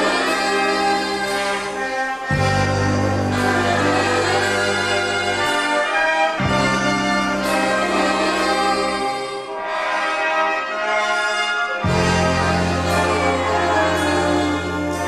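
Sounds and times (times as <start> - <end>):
held low bass notes: 0.0 - 5.5, 6.4 - 9.3, 11.8 - 15.0
trumpets and trombones: 0.0 - 15.0.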